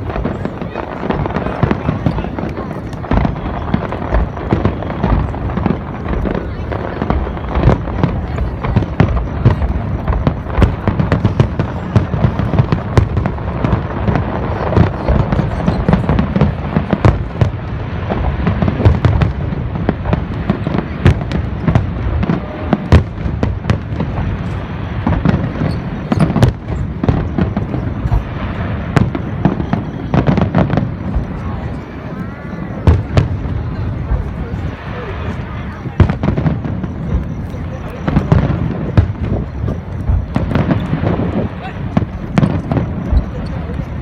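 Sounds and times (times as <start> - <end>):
fireworks bursts and bangs: 0.0 - 44.0.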